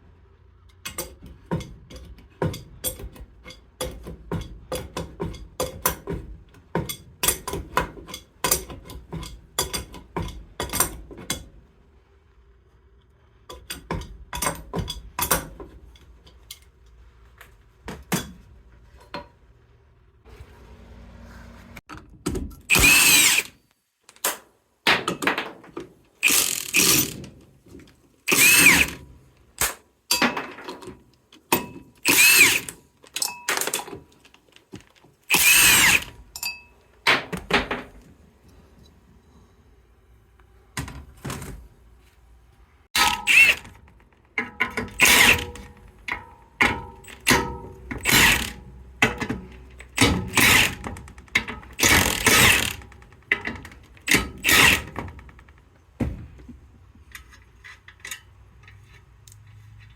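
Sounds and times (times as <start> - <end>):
hand ratchet clicking: 22.7 - 23.5, 26.2 - 27.2, 28.3 - 29.0, 32.0 - 32.7, 35.3 - 36.1, 48.0 - 48.6, 49.8 - 53.4, 54.0 - 55.5
cordless power tool bursts: 22.7 - 23.6, 26.2 - 27.2, 28.3 - 29.0, 32.0 - 32.8, 35.3 - 36.2, 43.0 - 43.7, 44.9 - 45.7, 48.0 - 48.6, 49.9 - 50.9, 51.8 - 52.9, 54.1 - 55.0.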